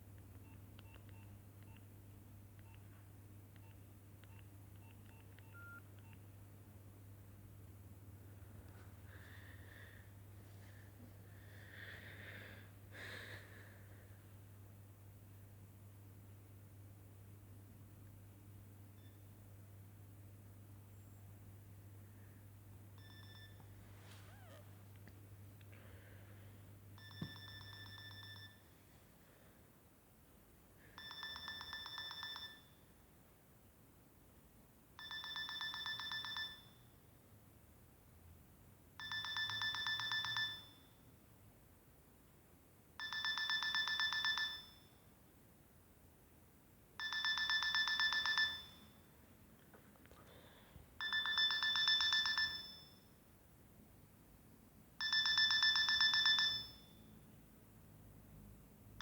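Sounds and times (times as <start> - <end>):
mobile phone ringing trill: 23.0 - 23.7, 27.0 - 28.7, 31.0 - 32.8, 35.0 - 36.9, 39.0 - 40.9, 43.0 - 45.0, 47.0 - 49.0, 51.0 - 53.0, 55.0 - 57.0.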